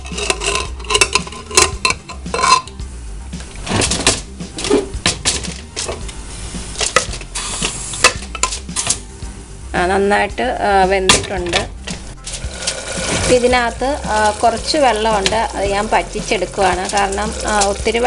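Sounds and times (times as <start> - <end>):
pressure cooker lid clattering: 0.2 - 2.8.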